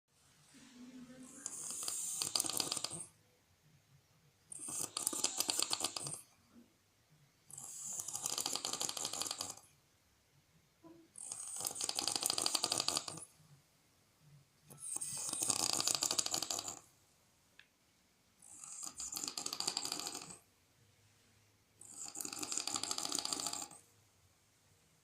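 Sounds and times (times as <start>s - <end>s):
person snoring: 1.1s - 3.1s, 4.5s - 6.2s, 7.5s - 9.6s, 11.2s - 13.3s, 14.7s - 16.8s, 18.4s - 20.4s, 21.8s - 23.8s.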